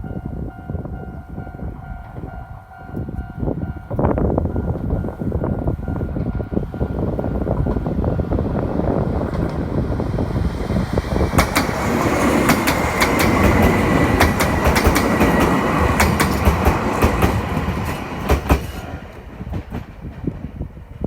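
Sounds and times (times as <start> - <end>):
train rumbling: 0.0 - 21.0
wheels clicking over rail joints: 10.5 - 20.6.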